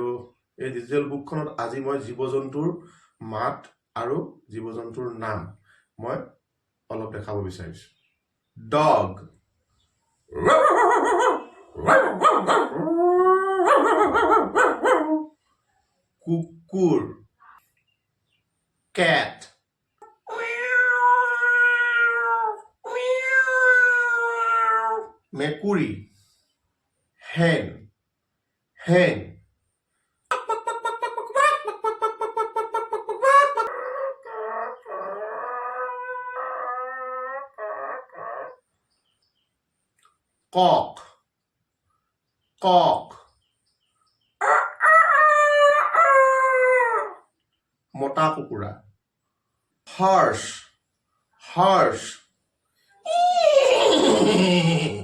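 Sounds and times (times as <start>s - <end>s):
dog barking: 10.4s - 12.9s, 13.6s - 15.2s
dog howling: 10.4s - 15.3s, 33.5s - 38.6s, 44.4s - 47.2s
recorded hen clucking: 13.6s - 15.1s, 30.3s - 38.6s, 44.4s - 47.2s.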